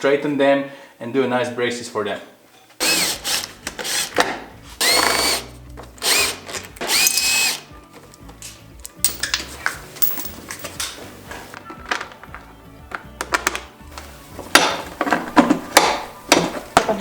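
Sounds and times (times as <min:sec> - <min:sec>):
cordless drill whirring: 0:02.8 - 0:04.2, 0:04.8 - 0:05.4, 0:06.0 - 0:07.6
parts being handled: 0:05.8 - 0:11.0.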